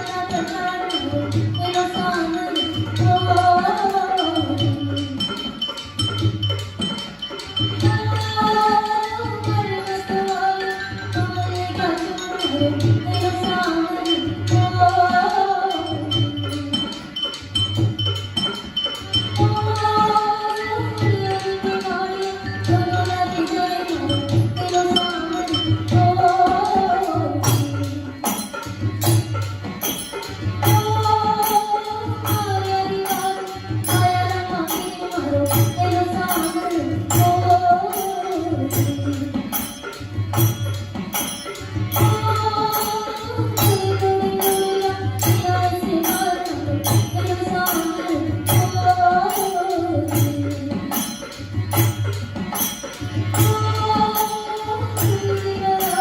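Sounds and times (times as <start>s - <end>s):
jingling percussion: 0.0s - 56.0s
person singing wavering melody: 18.9s - 56.0s.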